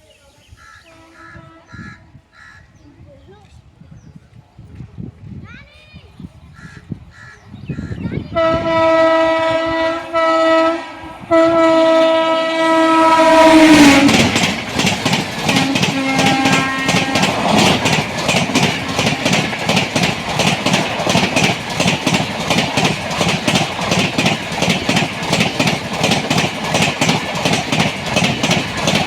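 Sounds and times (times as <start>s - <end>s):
train horn blasts: 8.3s - 14.5s, 15.4s - 19.6s
train wheels clattering over rail joints: 11.3s - 29.0s.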